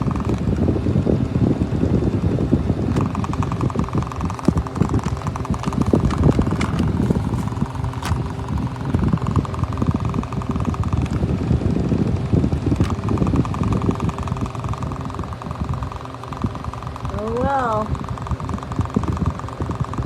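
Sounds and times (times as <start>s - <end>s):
air buffeting microphone: 0.0s - 20.0s
window fan motor hum: 0.0s - 20.0s.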